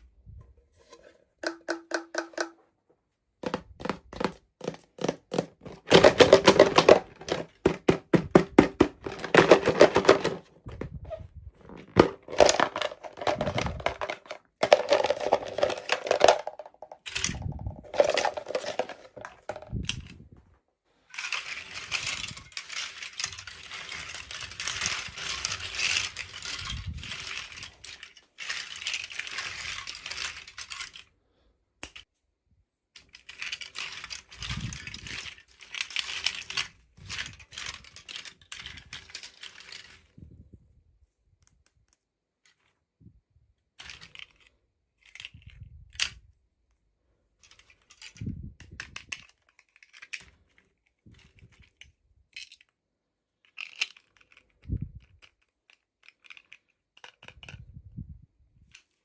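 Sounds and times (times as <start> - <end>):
plastic packaging clicks and taps: 1.4 - 2.6, 3.4 - 10.8
wrapper crinkling and rustling: 8.8 - 19.7.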